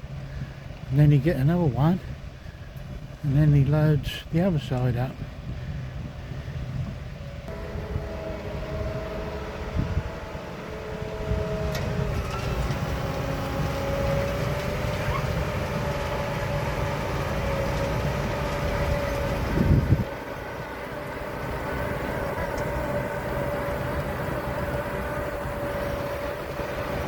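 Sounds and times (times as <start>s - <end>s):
tractor engine rumble: 0.0s - 27.0s
machinery whine: 7.4s - 27.0s.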